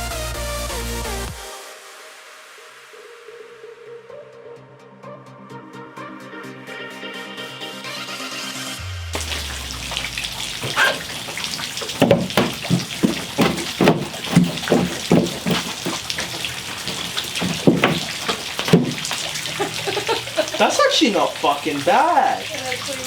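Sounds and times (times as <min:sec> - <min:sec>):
sharp splashes or knocks: 0:09.2 - 0:23.0
water running and splashing: 0:09.2 - 0:23.0.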